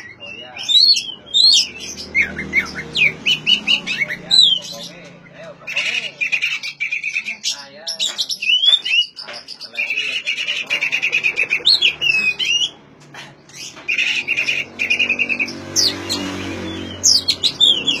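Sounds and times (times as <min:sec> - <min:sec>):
bird singing rattling notes: 0:00.0 - 0:18.0
bird swooping whistles: 0:14.5 - 0:18.0.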